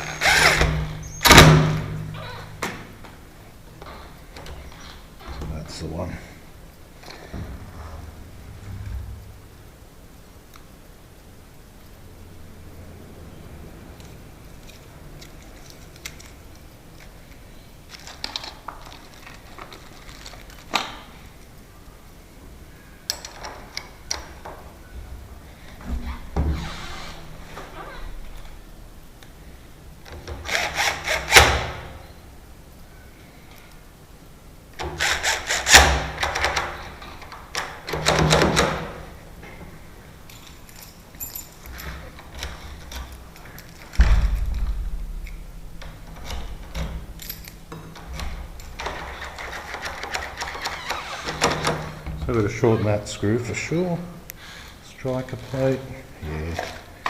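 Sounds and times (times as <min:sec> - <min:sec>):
power tool bursts: 0:00.0 - 0:01.8
sharp knock: 0:44.0 - 0:45.3.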